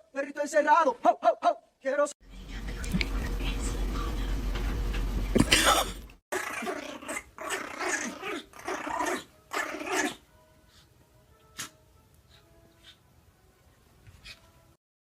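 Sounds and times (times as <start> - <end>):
dog growling: 5.5 - 10.2.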